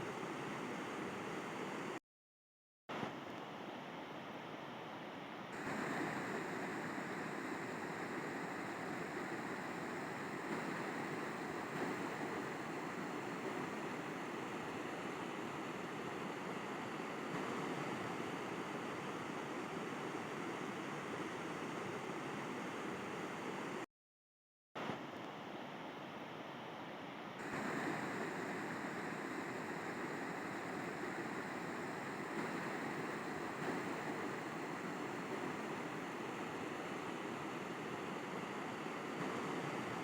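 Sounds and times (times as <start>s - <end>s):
river water rushing: 5.6s - 17.1s, 27.4s - 40.0s.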